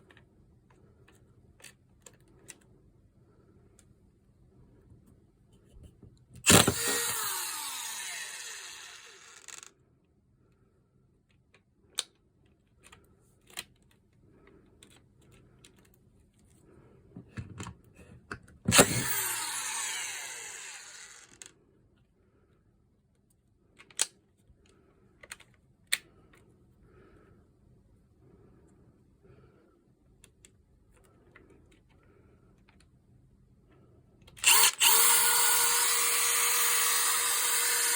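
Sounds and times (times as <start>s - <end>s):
tool handling clicks: 6.4s - 9.6s, 18.7s - 20.1s
screwdriver motor running: 6.4s - 9.7s, 18.7s - 21.5s, 34.4s - 37.9s.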